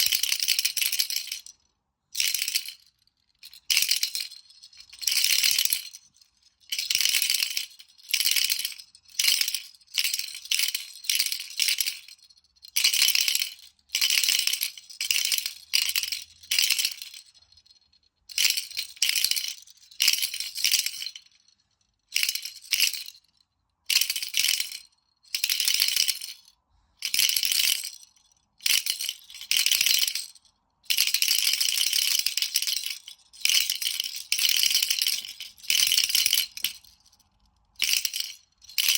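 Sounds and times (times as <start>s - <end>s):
baby rattle shaking: 0.0s - 1.6s, 2.2s - 38.9s.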